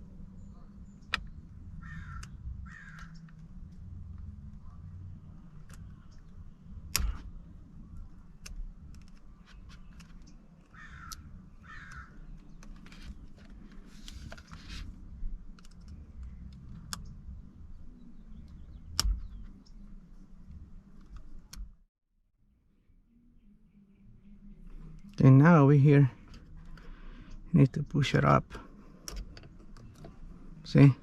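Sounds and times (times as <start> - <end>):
caw-like squawks: 1.8 - 3.3, 10.7 - 12.2.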